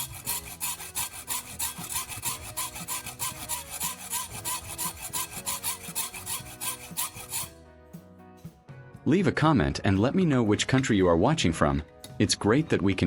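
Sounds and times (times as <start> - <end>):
hacksaw cutting metal: 0.0 - 7.6.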